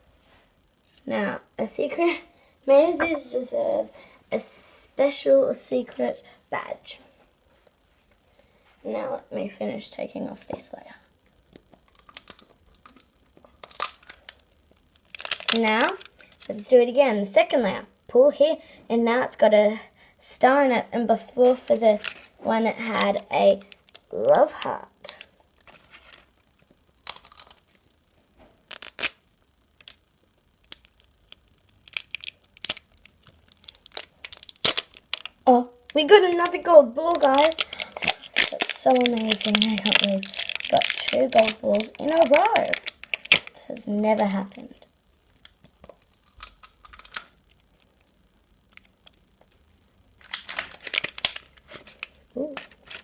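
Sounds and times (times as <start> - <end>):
wrapping ripping and crinkling: 11.5 - 16.6, 21.8 - 30.0, 30.6 - 44.6, 45.2 - 48.1, 48.7 - 53.0.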